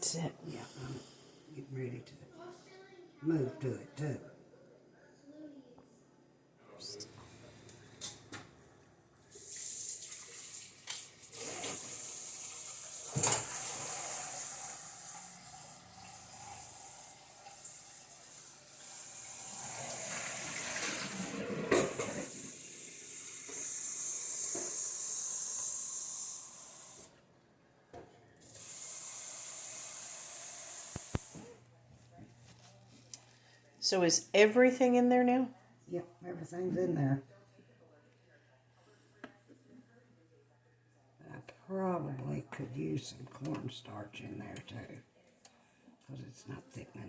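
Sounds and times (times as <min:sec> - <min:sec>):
faucet running into sink: 0:09.3 - 0:27.1, 0:28.4 - 0:31.6.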